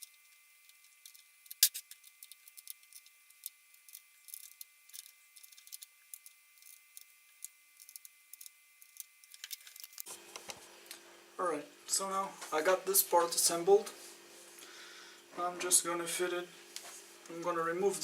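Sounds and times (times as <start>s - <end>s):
small clicks of parts handled: 0.0s - 10.1s.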